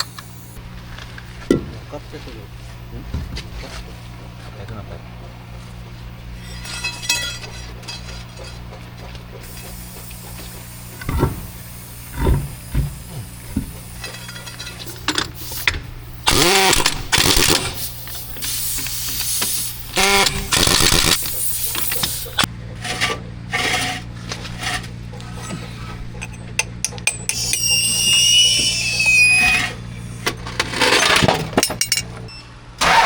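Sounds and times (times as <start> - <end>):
low machine hum: 0.0 - 32.8
metal working bursts: 9.4 - 32.2.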